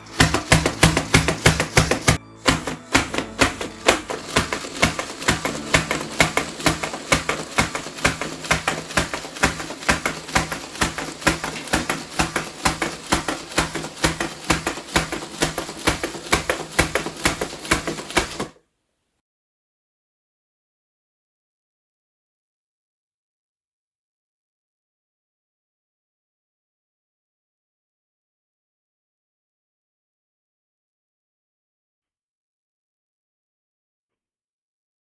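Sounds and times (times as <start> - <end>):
motor hum: 0.0 - 18.5
plastic legs and gears clicking: 0.0 - 18.5.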